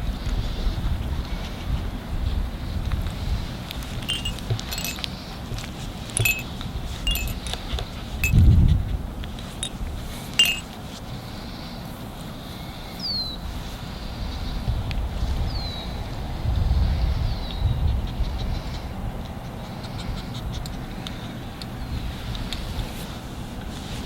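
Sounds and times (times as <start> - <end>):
light clinking and jingling: 4.0 - 8.4, 9.5 - 10.7
wind on microphone: 14.4 - 19.2.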